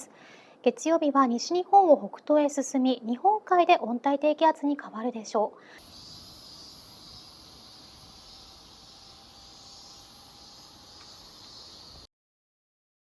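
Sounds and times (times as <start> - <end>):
faint outdoor hiss: 0.0 - 12.1
insects calling: 5.8 - 12.1.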